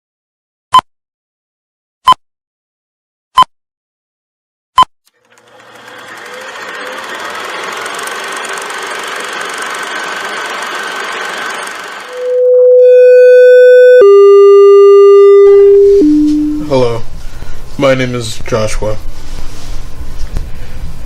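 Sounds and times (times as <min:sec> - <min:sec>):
mechanical whirring: 0:05.1 - 0:12.4.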